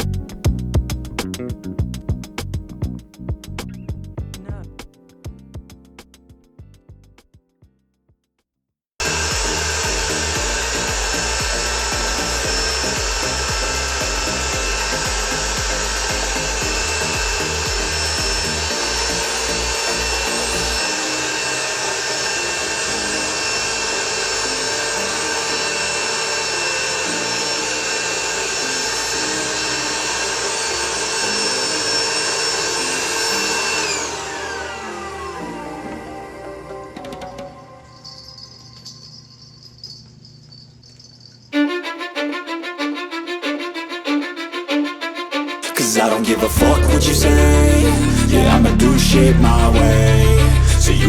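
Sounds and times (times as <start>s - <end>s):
electric air pump running: 9.0s - 35.4s.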